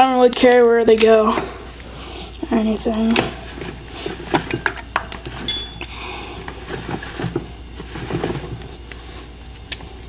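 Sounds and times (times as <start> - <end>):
metal tools clinking on bolts: 5.5 - 5.9.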